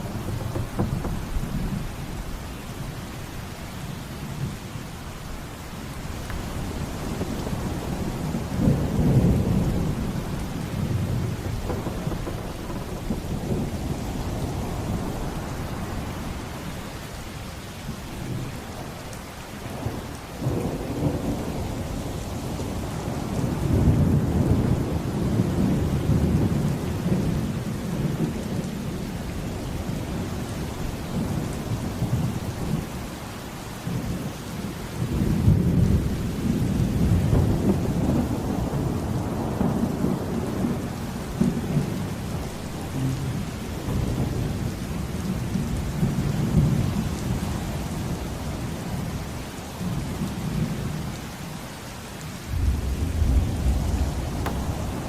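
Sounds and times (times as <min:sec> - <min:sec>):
heavy rain: 0:00.0 - 0:55.0
deep rolling thunder: 0:06.2 - 0:16.7, 0:19.6 - 0:33.2, 0:33.8 - 0:47.1, 0:52.5 - 0:55.0.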